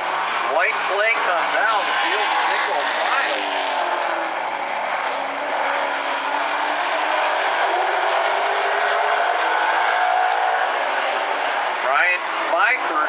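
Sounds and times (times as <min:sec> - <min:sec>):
race car engines at full throttle: 0:00.0 - 0:13.0.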